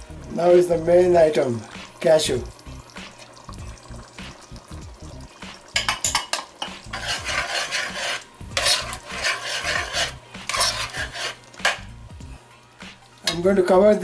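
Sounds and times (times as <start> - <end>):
spoon scraping in a pot: 5.8 - 12.0.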